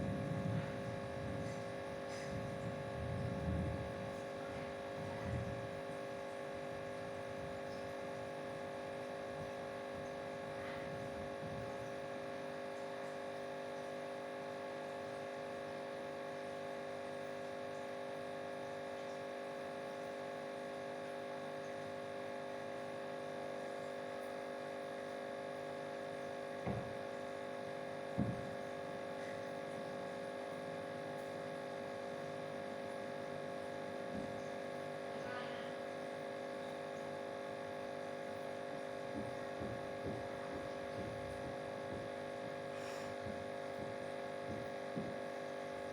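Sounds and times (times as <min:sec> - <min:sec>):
steady electrical hum: 0:00.0 - 0:45.9.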